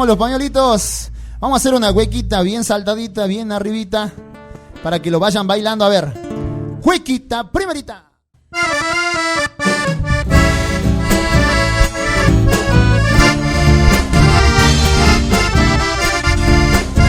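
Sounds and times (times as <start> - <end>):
band bass and percussion: 0.0 - 2.6, 9.6 - 17.0
accordion: 8.5 - 17.0.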